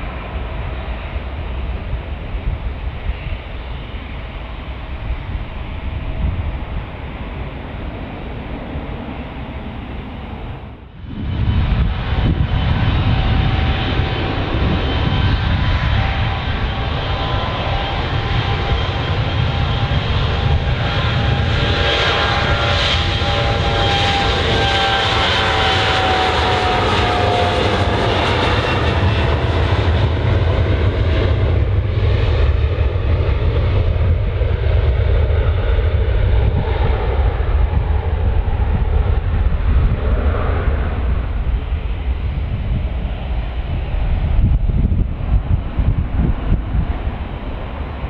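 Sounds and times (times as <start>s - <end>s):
jet airliner passing: 0.0s - 48.0s.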